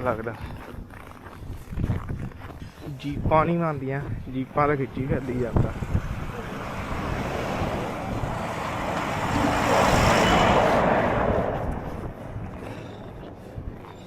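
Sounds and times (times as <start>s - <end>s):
vehicle passing on slushy road: 4.8s - 14.0s.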